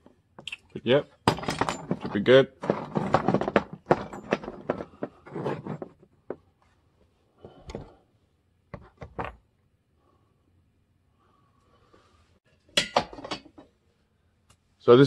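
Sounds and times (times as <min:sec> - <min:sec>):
plastic parts clicking and knocking: 0:01.3 - 0:06.4
plastic parts rubbing and scraping: 0:01.7 - 0:06.4.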